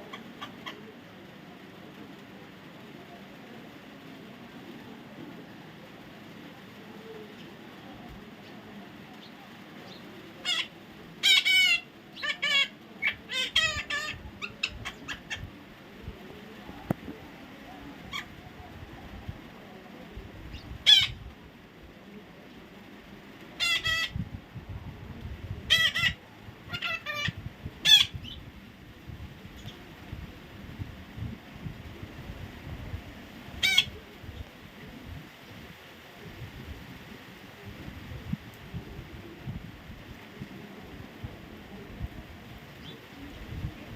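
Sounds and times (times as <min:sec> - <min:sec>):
parrot squawking: 0:10.4 - 0:15.4, 0:20.8 - 0:21.2, 0:23.6 - 0:24.1, 0:25.7 - 0:28.1, 0:33.6 - 0:33.9.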